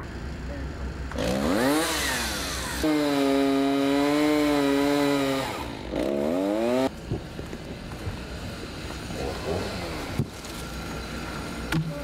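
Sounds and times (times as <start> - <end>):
chainsaw revving: 1.1 - 6.9, 9.0 - 11.7.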